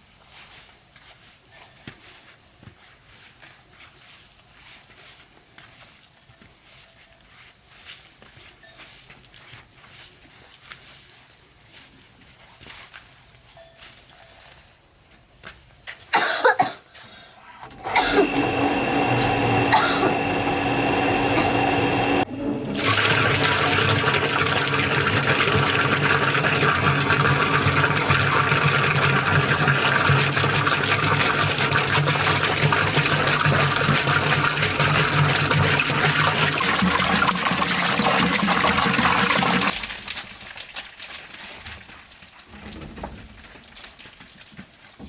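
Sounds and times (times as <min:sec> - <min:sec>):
water gushing: 0:17.7 - 0:44.1.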